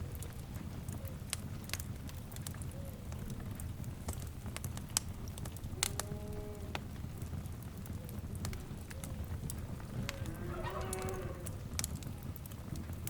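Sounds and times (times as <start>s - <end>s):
wood fire crackling: 0.0s - 13.0s
faint animal call: 9.9s - 11.6s.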